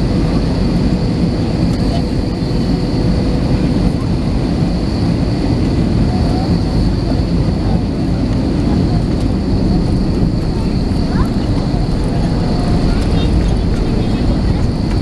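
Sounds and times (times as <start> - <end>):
jet engines roaring: 0.0 - 15.0.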